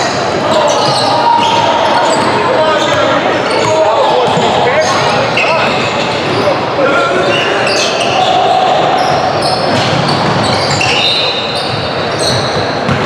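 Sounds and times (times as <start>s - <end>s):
sneakers squeaking on floor: 0.0s - 13.0s
voices echoing in hall: 0.0s - 13.0s
basketball bouncing on court: 0.7s - 5.8s, 11.6s - 13.0s.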